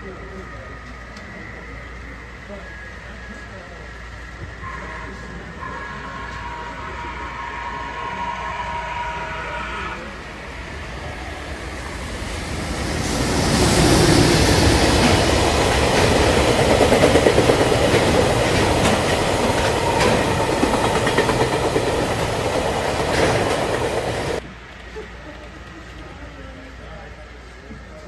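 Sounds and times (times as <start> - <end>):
train wheels clicking over rails: 10.5 - 24.4.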